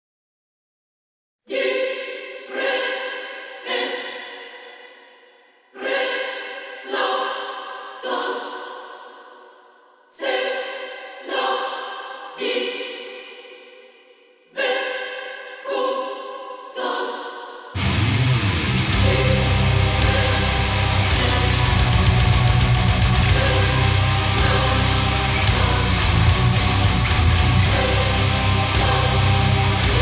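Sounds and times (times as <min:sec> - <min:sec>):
sampled choir chords with reverb: 0:01.5 - 0:30.0
bass guitar: 0:17.8 - 0:30.0
distorted guitars: 0:17.8 - 0:30.0
drums: 0:17.8 - 0:30.0.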